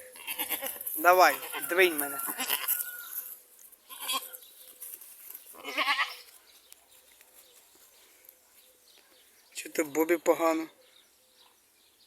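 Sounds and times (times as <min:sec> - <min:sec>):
goat bleating: 0:00.0 - 0:03.2, 0:03.9 - 0:04.4, 0:05.5 - 0:06.3.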